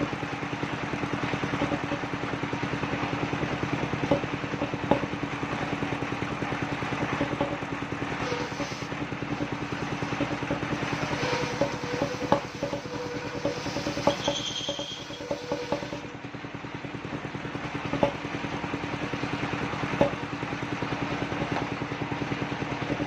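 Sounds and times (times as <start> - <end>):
sawmill engine running: 0.0 - 23.0
sharp knocks of timber or metal: 1.6 - 2.1, 4.0 - 5.2, 7.0 - 7.7, 9.3 - 16.0, 17.9 - 18.2, 19.9 - 20.2.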